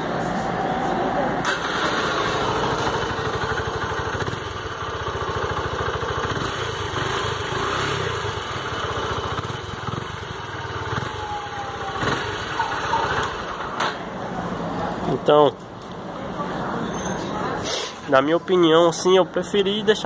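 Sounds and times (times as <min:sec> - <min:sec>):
motorcycle engine idling: 0:01.6 - 0:13.7.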